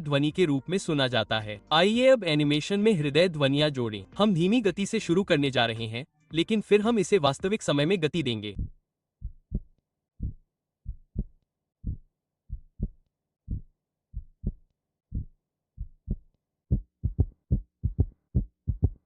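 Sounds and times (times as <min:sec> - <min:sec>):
heart beating with gallop rhythm: 0:08.6 - 0:19.0.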